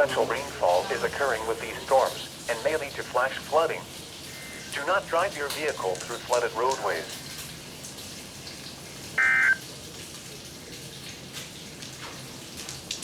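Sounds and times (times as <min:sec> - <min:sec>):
burst of digital data tones: 0:09.2 - 0:09.6.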